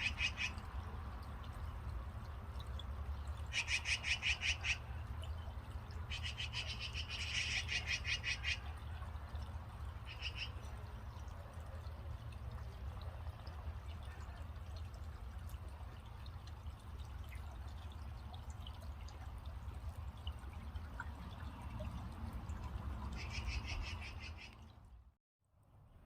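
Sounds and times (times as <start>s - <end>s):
magpies calling: 0.0s - 0.6s, 3.5s - 4.8s, 6.1s - 8.6s, 10.1s - 10.6s.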